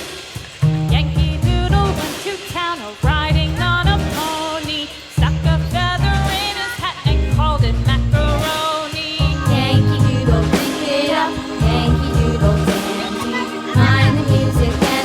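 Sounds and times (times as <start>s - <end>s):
pop song with singing: 0.9s - 15.0s.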